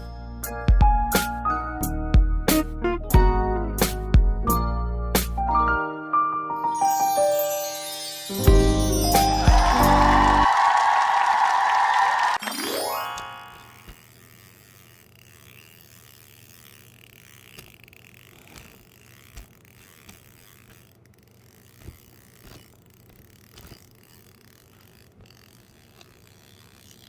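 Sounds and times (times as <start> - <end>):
fishing reel clicking: 12.4 - 27.0.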